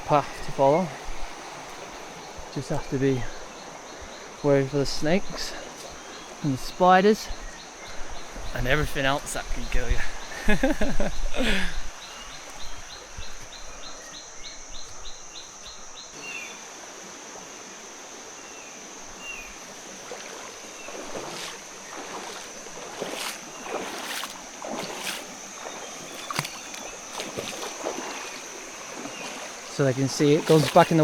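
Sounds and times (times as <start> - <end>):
rapid insect chirping: 0.0 - 31.0
high-pitched insect drone: 14.0 - 31.0
water splashing: 16.2 - 31.0.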